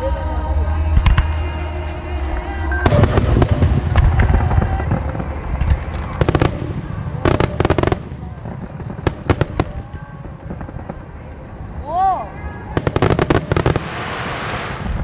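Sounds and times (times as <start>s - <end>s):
show music: 0.0s - 10.8s
firework crackling: 2.2s - 15.0s
firework boom: 2.8s - 11.0s.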